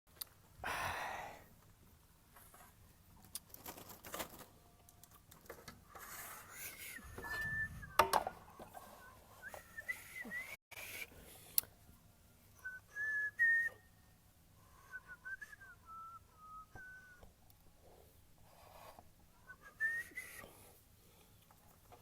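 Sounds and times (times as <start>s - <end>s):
person whistling: 6.7s - 8.2s, 8.8s - 10.6s, 12.6s - 13.9s, 14.8s - 17.2s, 19.4s - 20.5s.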